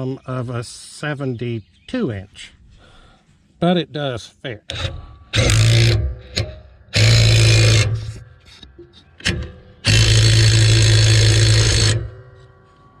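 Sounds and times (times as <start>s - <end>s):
impact wrench: 4.7s - 12.5s.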